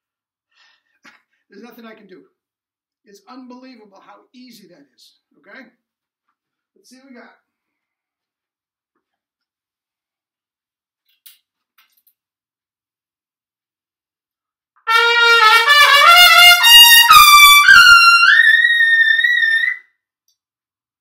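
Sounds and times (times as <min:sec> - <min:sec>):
trumpet climbing run: 0:14.8 - 0:19.8.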